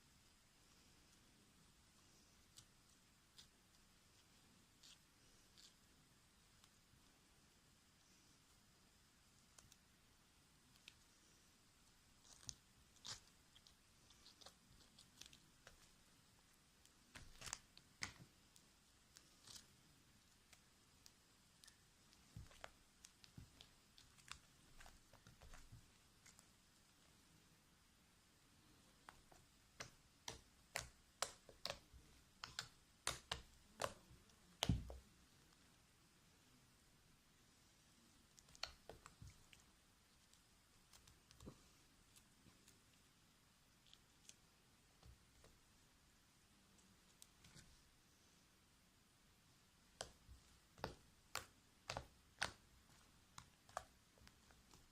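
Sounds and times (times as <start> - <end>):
slime crackling and popping: 16.8 - 18.3, 29.0 - 35.0, 49.9 - 54.9.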